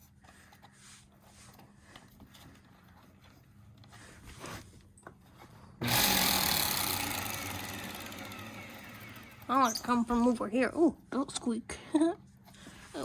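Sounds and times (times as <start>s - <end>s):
faint handling noises: 0.0s - 5.8s
vacuum cleaner motor whining: 5.8s - 10.2s.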